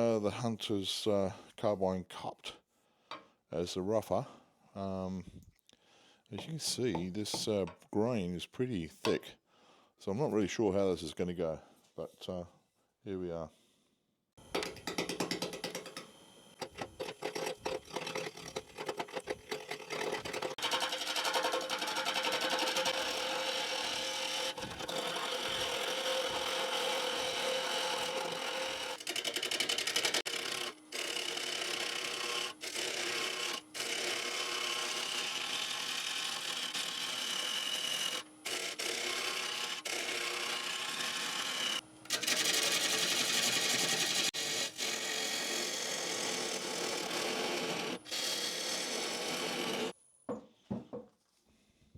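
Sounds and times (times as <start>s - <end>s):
tool chattering on wood: 6.4s - 7.8s, 14.5s - 23.0s
lathe tool cutting wood: 14.5s - 49.9s.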